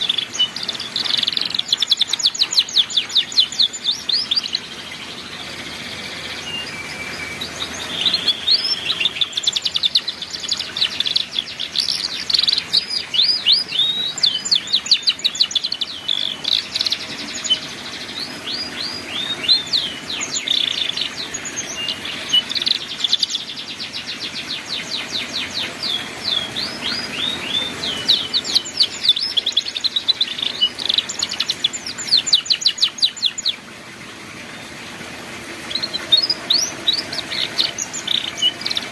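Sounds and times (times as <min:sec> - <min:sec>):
canary singing trills: 0:00.0 - 0:33.7, 0:35.5 - 0:38.9.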